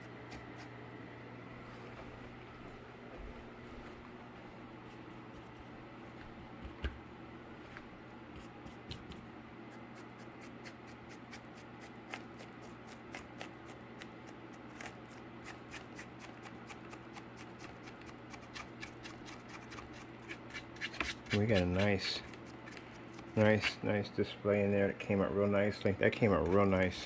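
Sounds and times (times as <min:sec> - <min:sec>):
paintbrush scratching on cardboard: 0:14.7 - 0:24.0.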